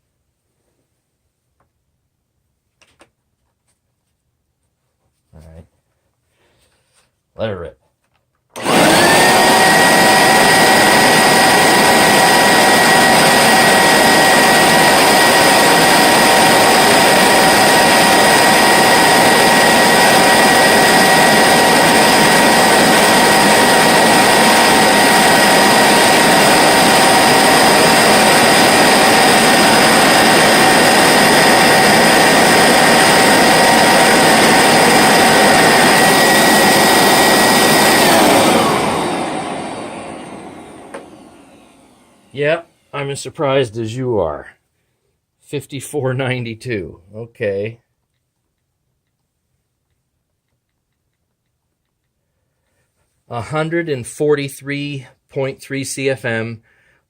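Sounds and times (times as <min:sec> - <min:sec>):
motor high whine: 0:08.6 - 0:42.9.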